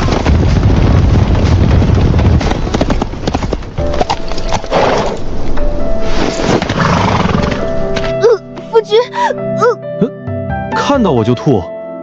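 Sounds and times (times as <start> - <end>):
horses galloping: 0.0 - 5.4.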